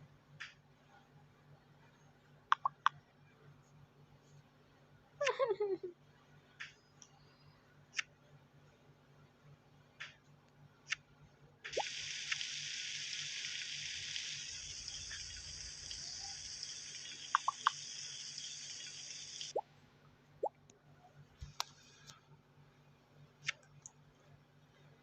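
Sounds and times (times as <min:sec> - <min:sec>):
water running from a tap: 0:11.7 - 0:19.5
water drips: 0:11.7 - 0:19.6.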